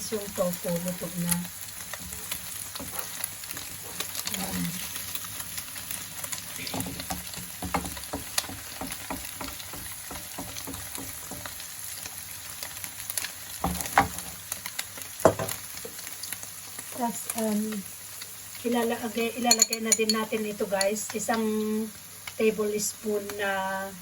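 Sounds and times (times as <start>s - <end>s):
food sizzling in hot oil: 0.0s - 24.0s
ladle knocking and scraping pan: 19.5s - 20.2s.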